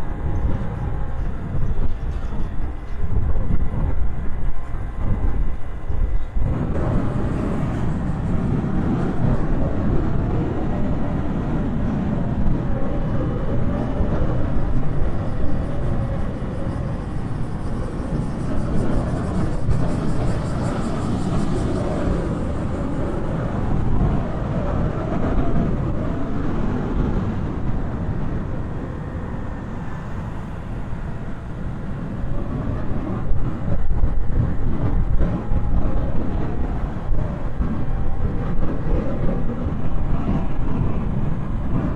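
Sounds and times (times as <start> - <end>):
wind buffeting microphone: 0.0 - 41.9.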